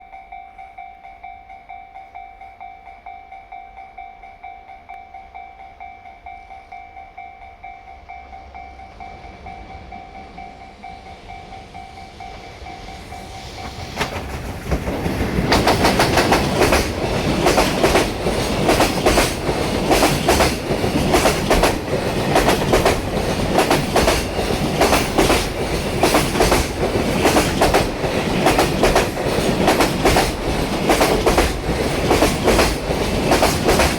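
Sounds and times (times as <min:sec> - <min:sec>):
level-crossing warning bell: 0:00.0 - 0:13.9, 0:15.2 - 0:33.9
freight train rumbling past: 0:05.6 - 0:33.9
wheels clattering over rail joints: 0:12.4 - 0:33.9.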